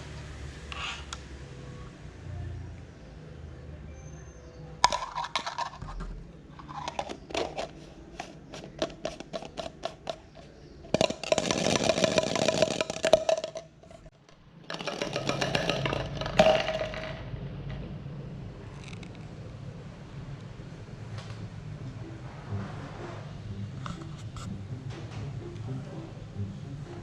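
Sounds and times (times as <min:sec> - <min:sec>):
toy rattling inside a jar: 0:04.8 - 0:06.0, 0:06.6 - 0:17.3.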